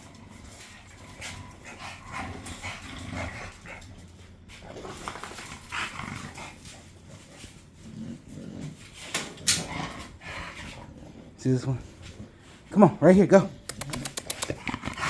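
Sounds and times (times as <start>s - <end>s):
dogs making short sounds: 13.5s - 15.0s.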